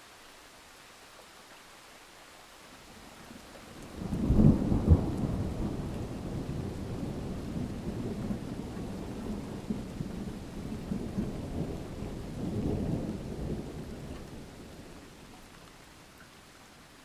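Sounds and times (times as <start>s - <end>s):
steady rain: 0.0s - 17.0s
thunder rumbling: 3.8s - 15.2s.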